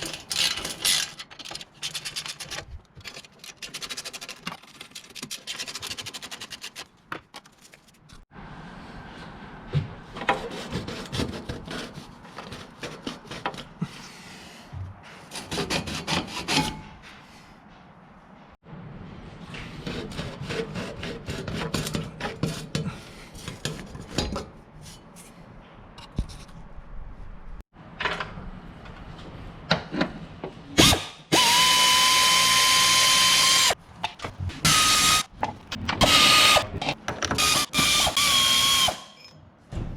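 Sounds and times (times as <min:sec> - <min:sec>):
hand tools clicking and scraping: 0:00.0 - 0:08.3, 0:10.2 - 0:14.3, 0:33.4 - 0:39.4
power tool whining: 0:31.4 - 0:33.8, 0:37.4 - 0:39.2.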